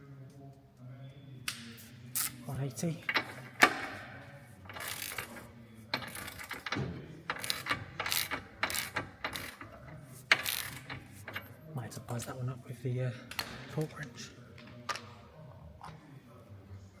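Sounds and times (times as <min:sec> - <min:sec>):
ratchet wrench clicking: 0:04.7 - 0:11.5.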